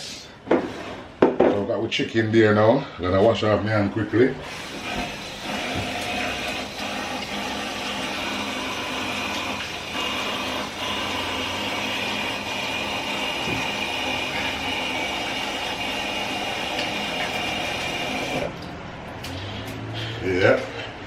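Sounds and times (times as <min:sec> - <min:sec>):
tap water running: 0:03.9 - 0:19.9
hands washing under water: 0:12.5 - 0:20.2.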